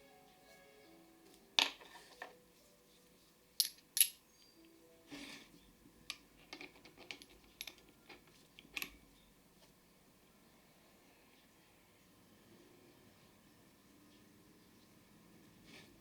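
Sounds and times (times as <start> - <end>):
small metal parts clinking: 3.6 - 4.6, 6.1 - 9.0.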